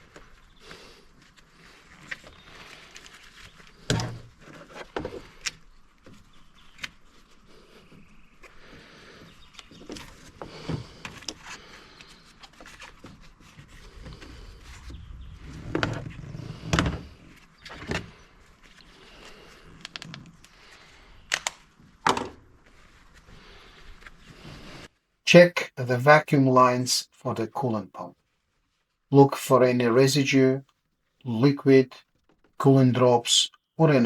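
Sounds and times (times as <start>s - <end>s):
rustling: 0.0s - 24.9s.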